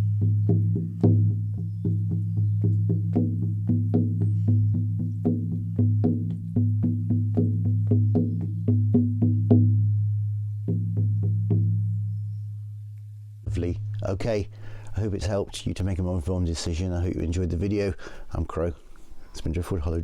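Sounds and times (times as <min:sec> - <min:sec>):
frame drum strikes: 0:00.0 - 0:09.9.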